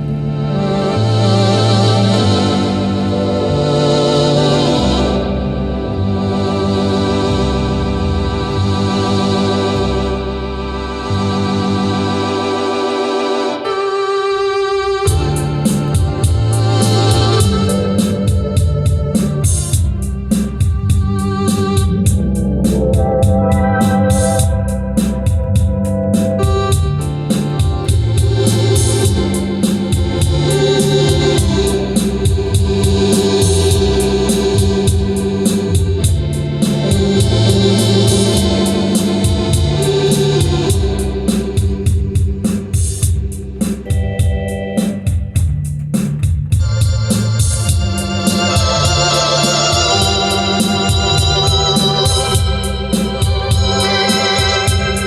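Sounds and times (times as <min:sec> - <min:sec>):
organ bass line: 0:00.0 - 0:55.0
organ playing chords: 0:00.0 - 0:55.0
steady ticking beat: 0:15.0 - 0:55.0.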